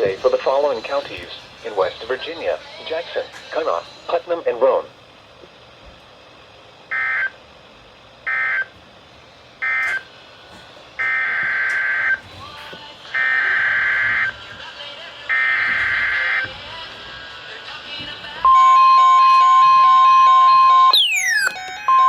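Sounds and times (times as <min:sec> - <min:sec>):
warbling digital data bursts: 0:20.3 - 0:21.5.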